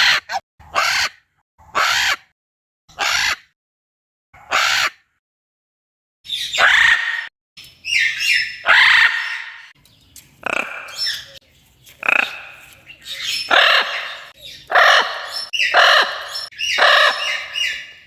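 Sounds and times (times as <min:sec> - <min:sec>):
parrot screeching and squawking: 0:00.0 - 0:01.2, 0:01.8 - 0:02.3, 0:02.9 - 0:03.5, 0:04.4 - 0:05.0, 0:06.3 - 0:09.7, 0:10.4 - 0:11.4, 0:12.0 - 0:18.0.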